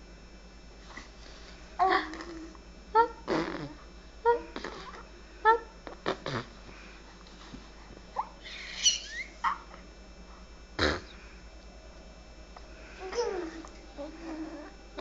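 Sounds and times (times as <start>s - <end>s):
baby squeaking and cooing: 8.2s - 9.6s.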